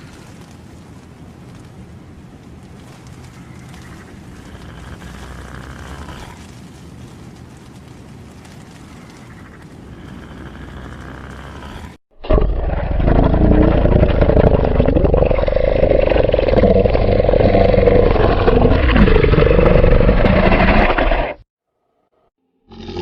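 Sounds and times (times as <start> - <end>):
monster rasping roar: 10.0 - 21.4.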